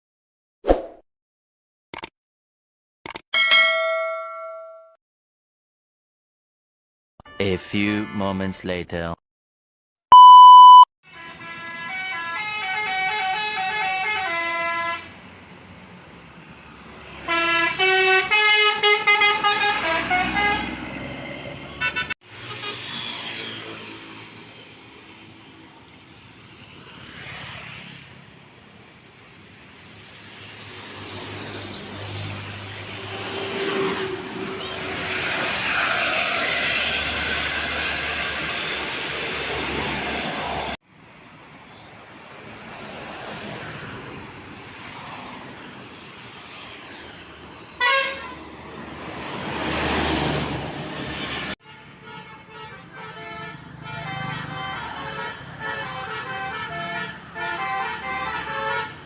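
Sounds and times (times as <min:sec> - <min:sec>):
loud horn blast: 0:11.1 - 0:15.2, 0:17.2 - 0:21.0, 0:47.8 - 0:48.4, 0:51.6 - 0:59.0
multi-tone bus horns: 0:11.1 - 0:15.4, 0:17.0 - 0:23.0, 0:47.8 - 0:48.5, 0:51.6 - 0:59.0
bus engines running: 0:11.1 - 0:59.0.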